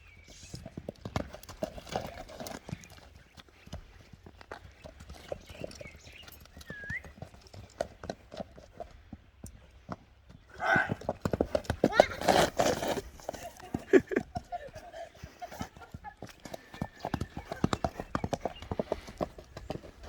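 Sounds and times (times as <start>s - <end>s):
horse hooves clip-clopping: 0.0s - 20.0s.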